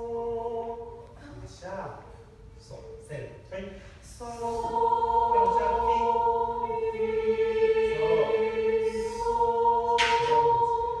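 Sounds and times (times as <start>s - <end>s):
choir singing held notes: 0.0s - 1.1s, 4.2s - 11.0s.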